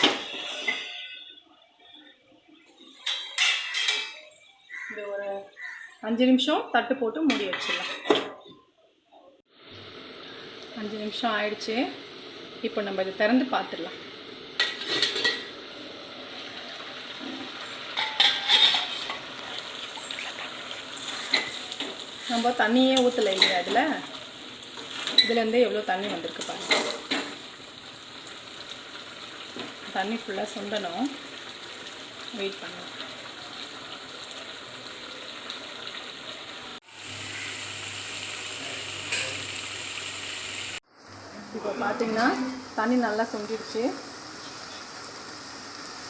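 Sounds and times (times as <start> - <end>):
gravy sizzling in a pan: 9.5 - 46.0
spoon scraping against pan: 18.0 - 19.2.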